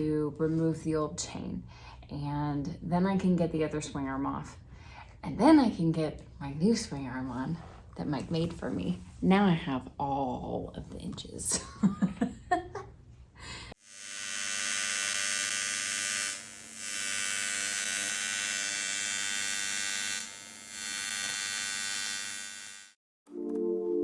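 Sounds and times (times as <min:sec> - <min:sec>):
electric power tool buzzing: 0:13.7 - 0:23.0.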